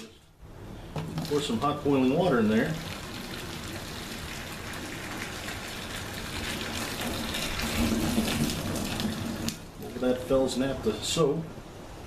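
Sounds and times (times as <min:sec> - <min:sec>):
water pouring into a bucket: 0:01.0 - 0:09.9.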